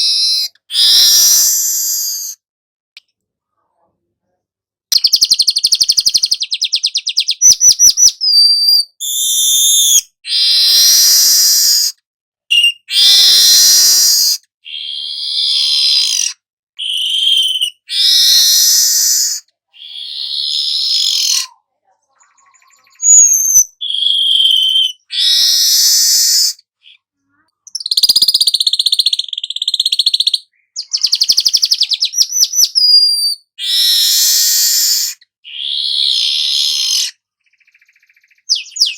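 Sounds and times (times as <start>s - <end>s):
buzzy sizzling bird phrases: 21.0s - 24.6s.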